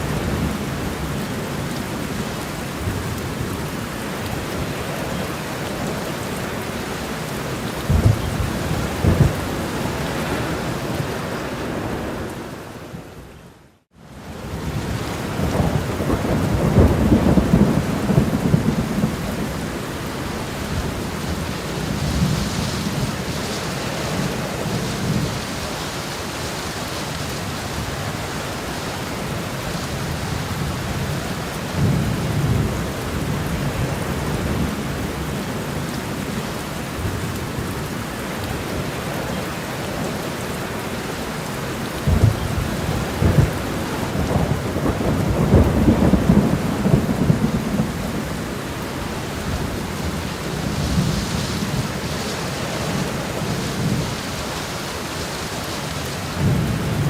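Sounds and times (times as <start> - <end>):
heavy rain: 0.0 - 57.0
rolling thunder: 7.8 - 12.2, 14.5 - 19.8, 42.1 - 48.5, 56.3 - 57.0.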